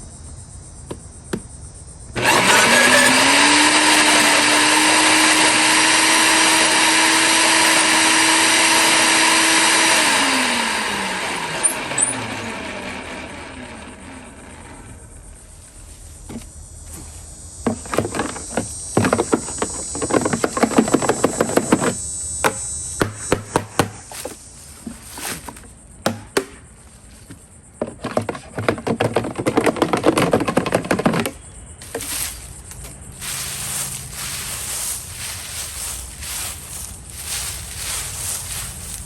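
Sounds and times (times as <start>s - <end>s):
wood chipper cracking sticks: 2.2s - 15.2s, 16.2s - 26.8s, 27.8s - 39.0s
motor running: 2.2s - 15.4s, 31.8s - 39.0s.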